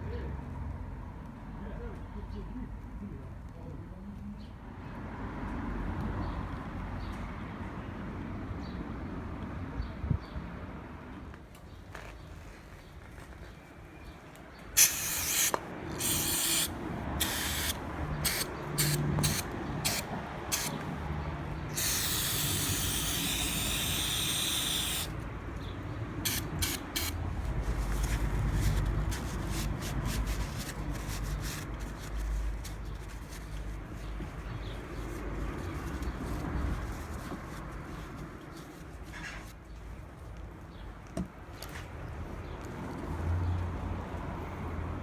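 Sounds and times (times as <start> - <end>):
spray hissing: 14.8 - 20.8, 21.7 - 25.2, 26.3 - 27.2.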